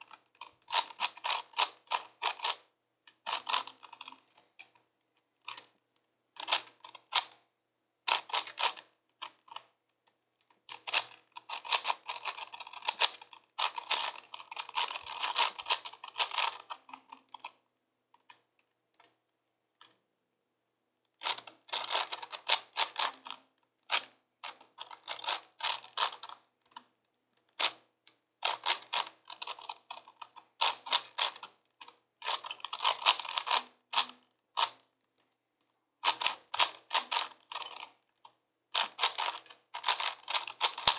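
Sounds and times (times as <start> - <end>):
puzzle cube plastic clicks: 0.0 - 4.8, 6.4 - 7.4, 8.1 - 9.7, 10.4 - 17.6, 21.2 - 26.9, 28.4 - 34.8, 36.0 - 38.0, 38.7 - 40.9.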